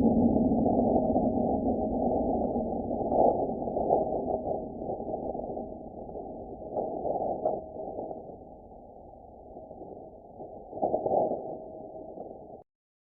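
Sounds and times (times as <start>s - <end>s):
low crackly rumble: 0.0s - 12.6s.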